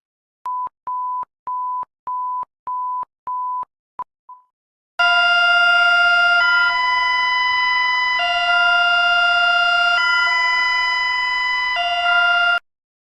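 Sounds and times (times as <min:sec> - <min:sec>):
hi-lo emergency alarm tone: 0:05.0 - 0:12.6.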